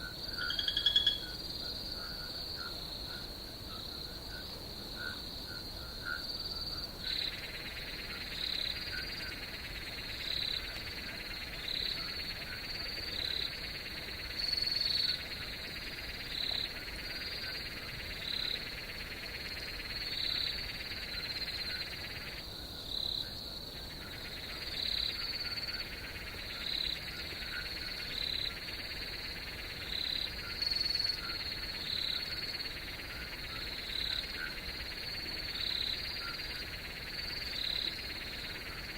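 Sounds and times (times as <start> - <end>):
frog calling: 0.0 - 3.2, 7.1 - 22.4, 23.8 - 38.9
crickets trilling: 0.0 - 38.9.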